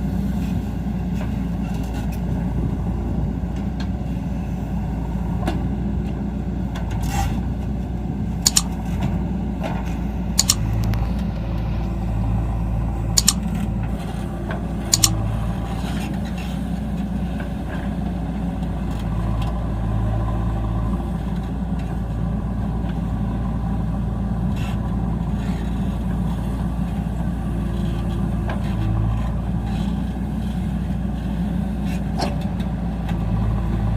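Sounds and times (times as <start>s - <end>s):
diesel engine running: 0.0s - 33.9s
sharp clicks: 8.5s - 8.8s, 10.4s - 11.2s, 13.2s - 13.5s, 14.9s - 15.2s.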